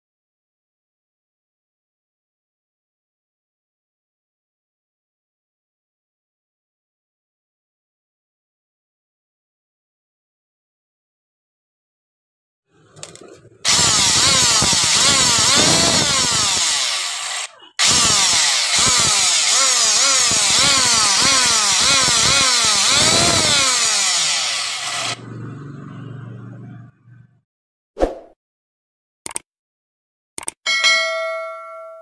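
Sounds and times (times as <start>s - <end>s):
marble cutter whining: 12.7s - 27.2s.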